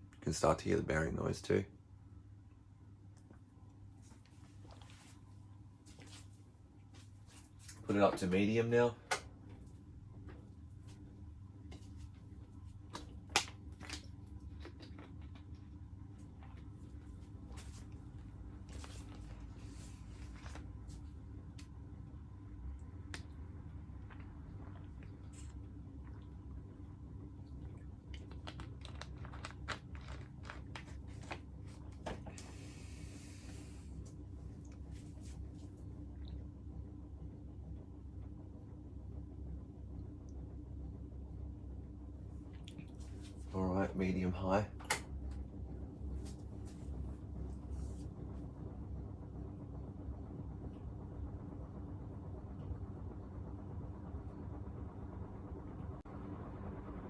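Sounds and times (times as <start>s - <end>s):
ceiling fan motor hum: 0.0s - 57.0s.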